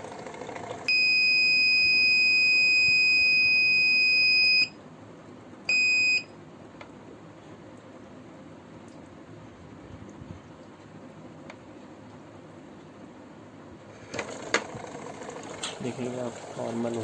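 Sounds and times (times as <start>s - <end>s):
electronic buzzer beeping: 0.9s - 4.7s, 5.7s - 6.3s.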